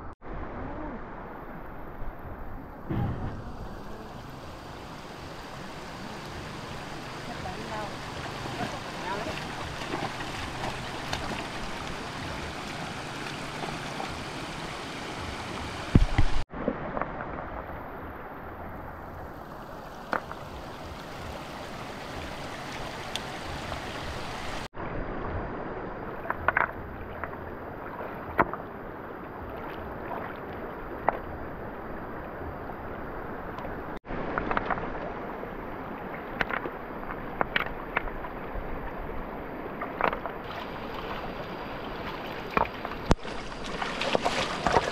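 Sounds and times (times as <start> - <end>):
loud thump: 2.9 - 3.9
water splashing: 2.9 - 24.7, 26.0 - 44.9.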